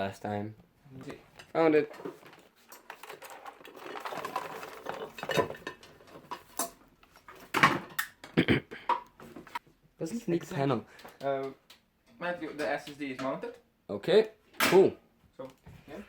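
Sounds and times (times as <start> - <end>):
small hard objects clattering: 1.8 - 8.1.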